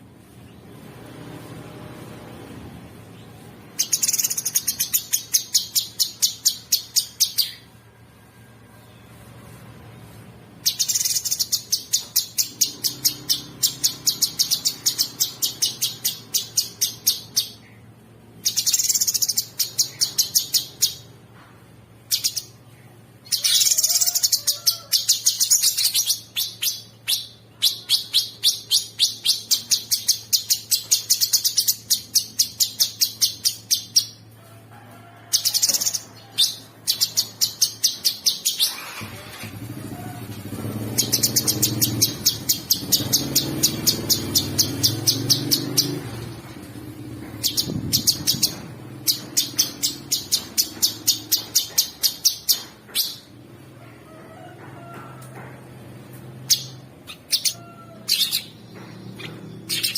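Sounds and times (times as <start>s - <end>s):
bird chattering song: 3.2s - 7.8s, 10.6s - 21.2s, 22.0s - 34.3s, 35.3s - 39.0s, 40.6s - 53.4s, 56.4s - 59.9s.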